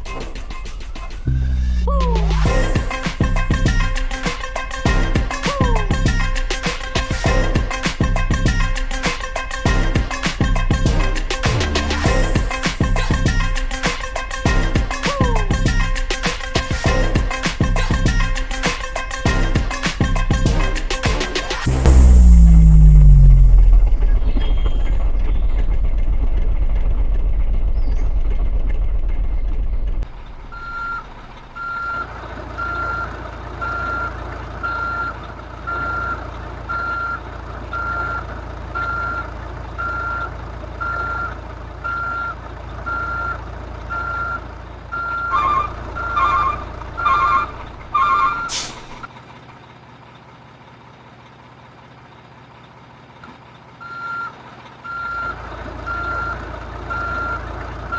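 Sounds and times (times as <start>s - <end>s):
low engine-like hum: 0.0s - 19.4s, 20.3s - 57.9s
low rumbling: 1.2s - 4.2s, 20.5s - 32.4s, 45.0s - 49.1s
reversing beeper: 21.6s - 26.1s, 30.2s - 38.2s, 38.8s - 49.1s, 54.9s - 57.5s.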